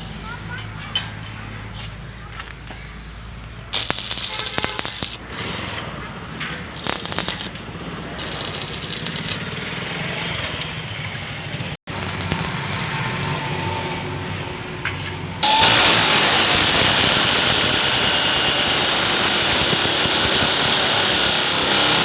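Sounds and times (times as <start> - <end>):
arc welding crackling: 3.7 - 5.4, 6.7 - 9.6, 11.9 - 13.4, 15.4 - 22.0.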